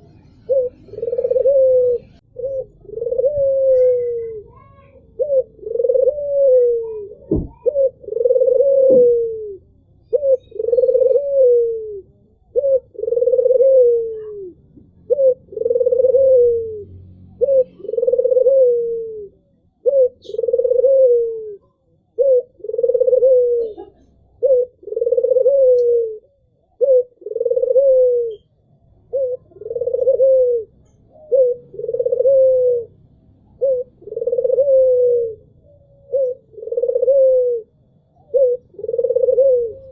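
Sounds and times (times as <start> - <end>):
dove cooing: 0.0 - 39.9
brief knock: 7.3 - 7.6.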